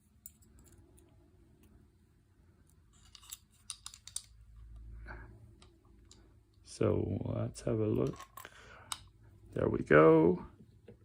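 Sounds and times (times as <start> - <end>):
light clicks of gun parts: 8.0 - 9.2.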